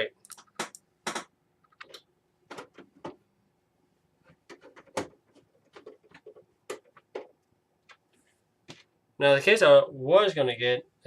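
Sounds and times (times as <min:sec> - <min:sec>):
computer hardware clicks and knocks: 0:00.2 - 0:03.2, 0:04.3 - 0:08.1.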